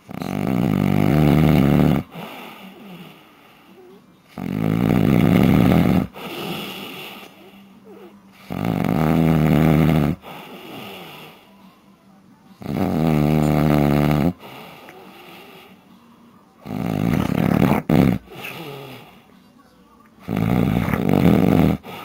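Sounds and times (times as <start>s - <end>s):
man snoring loudly: 0.0s - 3.2s, 4.3s - 7.6s, 8.4s - 11.4s, 12.6s - 15.7s, 16.6s - 19.2s, 20.2s - 22.0s
quiet breathing: 0.0s - 22.0s.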